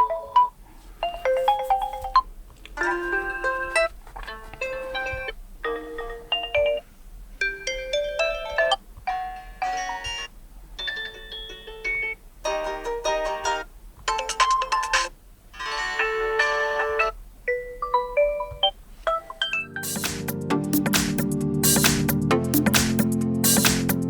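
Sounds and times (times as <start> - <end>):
smartphone ringtone chimes: 4.6 - 6.8, 15.6 - 20.0.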